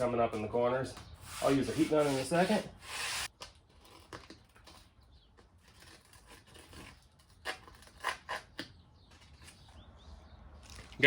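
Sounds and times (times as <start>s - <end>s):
blade rasping through grip tape: 1.2s - 3.3s, 5.6s - 8.7s.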